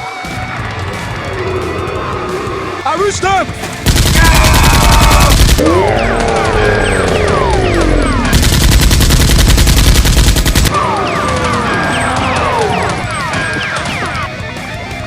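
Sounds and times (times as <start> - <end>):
automatic gunfire: 3.8 - 12.4.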